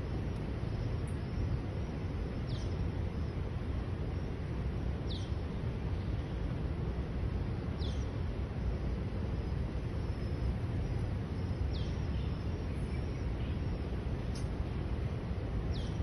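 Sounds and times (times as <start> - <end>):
low background rumble: 0.0 - 16.0.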